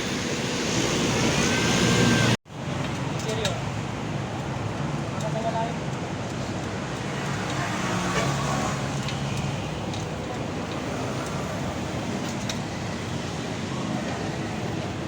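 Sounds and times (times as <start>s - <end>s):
road traffic noise: 0.0s - 15.0s.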